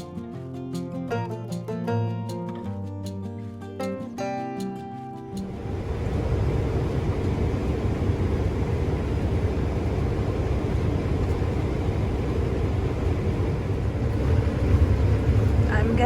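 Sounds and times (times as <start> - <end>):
vehicle engine rumble: 5.4 - 16.0.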